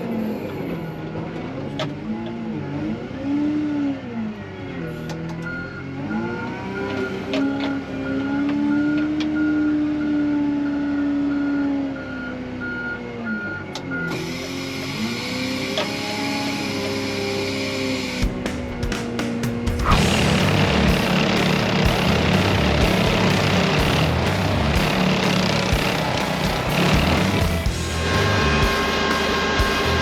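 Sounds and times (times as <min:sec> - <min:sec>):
diesel engine revving: 0:00.0 - 0:30.0
reverse alarm beeping: 0:08.0 - 0:14.5.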